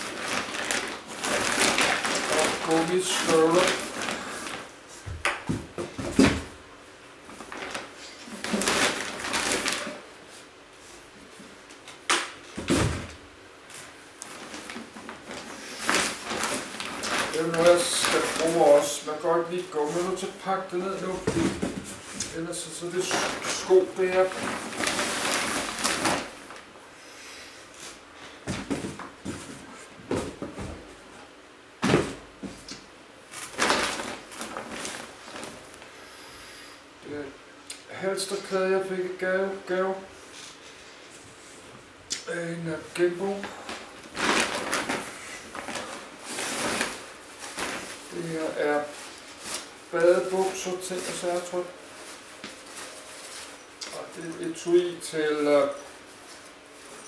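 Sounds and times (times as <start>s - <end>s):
rustling: 0.0s - 5.0s, 7.2s - 11.6s, 13.6s - 26.7s, 31.8s - 36.0s, 43.0s - 57.0s
shoes knocking in cardboard box: 5.1s - 6.6s, 28.4s - 30.9s, 31.8s - 32.6s.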